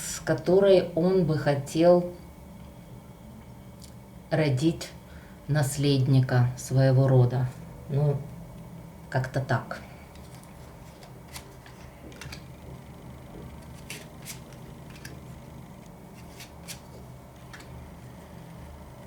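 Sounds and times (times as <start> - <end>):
low steady hum: 0.0 - 19.0
cards being shuffled: 10.2 - 12.7, 13.4 - 17.8.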